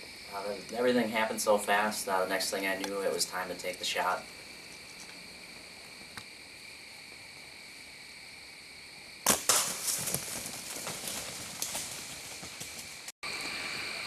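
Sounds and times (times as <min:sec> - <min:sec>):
insects chorus: 0:00.0 - 0:14.0
rustling and crashing: 0:09.3 - 0:13.1.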